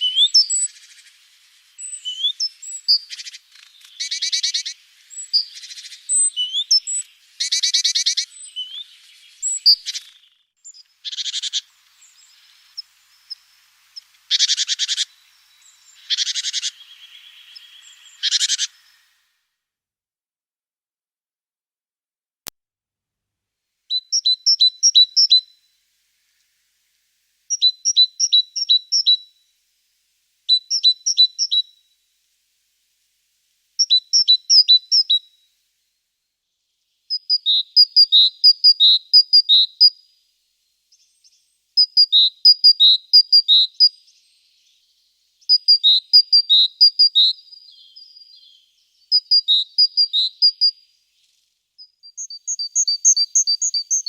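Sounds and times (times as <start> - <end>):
songbird singing two-note phrases: 0.0 - 0.8, 3.9 - 10.8.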